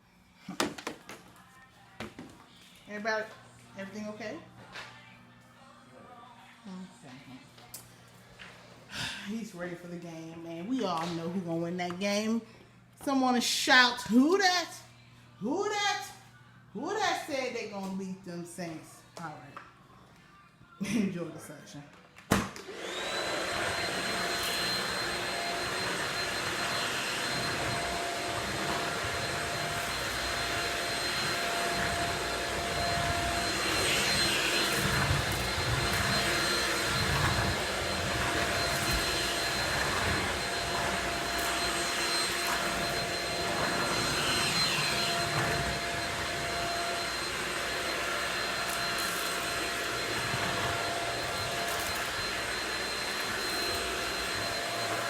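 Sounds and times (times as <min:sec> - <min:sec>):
stick vacuum running with whine: 0:22.6 - 0:55.0.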